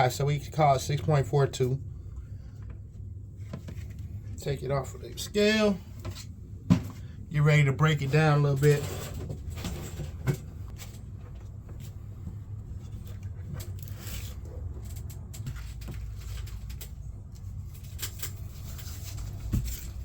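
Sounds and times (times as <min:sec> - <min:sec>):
wires handled in a bucket: 0:12.7 - 0:20.0.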